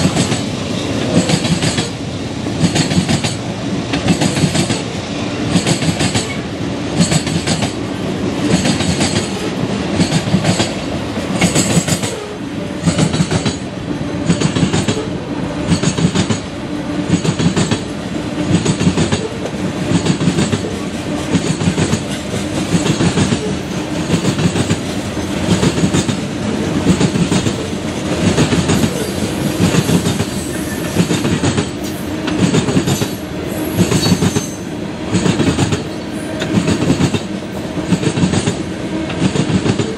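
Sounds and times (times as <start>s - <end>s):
train wheels clicking over rail joints: 0.0s - 39.9s.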